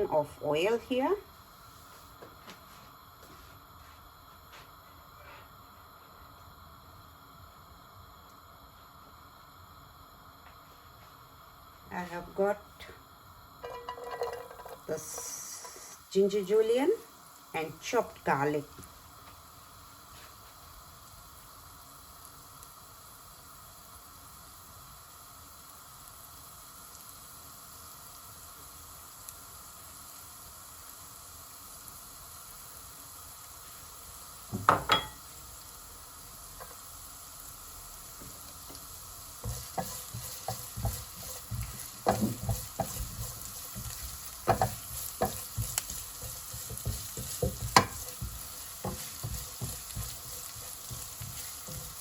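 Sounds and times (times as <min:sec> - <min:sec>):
food sizzling in a wok: 0:00.0 - 0:52.0
spatula knocking and scraping pan: 0:13.6 - 0:15.8, 0:39.4 - 0:52.0.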